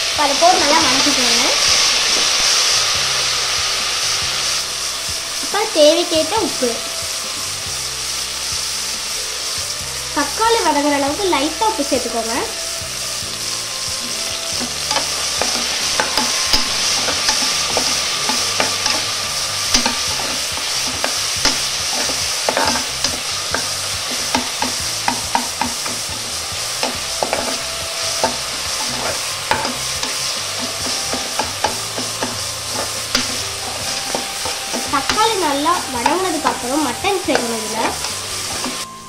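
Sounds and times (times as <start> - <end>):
vegetables sizzling in oil: 0.0 - 39.0
spoon knocking and scraping pot: 14.0 - 35.3.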